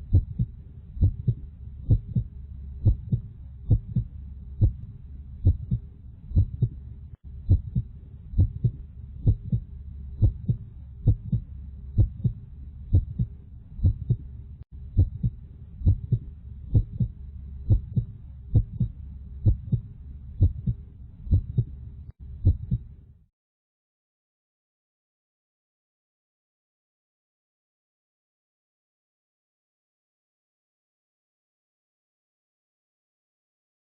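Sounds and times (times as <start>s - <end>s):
low hum: 0.0s - 23.0s
heartbeat double thump: 0.1s - 4.8s, 5.4s - 6.8s, 7.4s - 9.6s, 10.2s - 11.4s, 12.0s - 14.2s, 15.0s - 17.1s, 17.7s - 19.8s, 20.4s - 21.7s, 22.4s - 22.8s.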